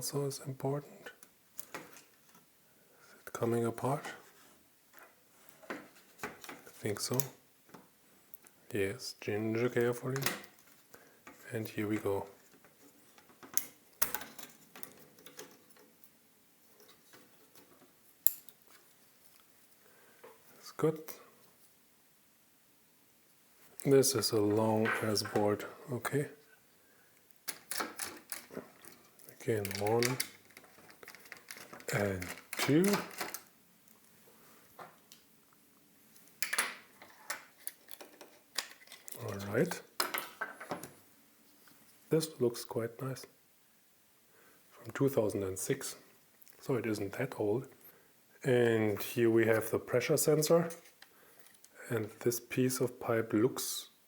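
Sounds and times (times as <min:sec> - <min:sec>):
small plastic parts clicking: 0:27.5 - 0:33.5, 0:36.4 - 0:39.3.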